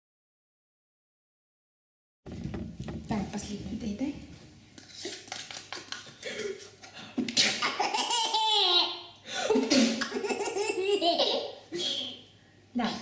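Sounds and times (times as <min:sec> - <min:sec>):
baby laughing: 0:07.4 - 0:12.2.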